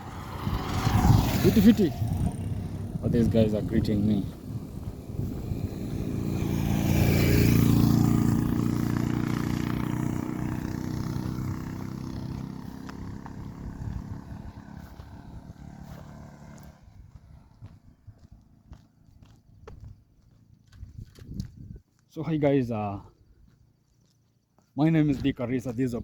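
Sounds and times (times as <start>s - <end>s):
vehicle engine passing by: 0.0s - 19.2s.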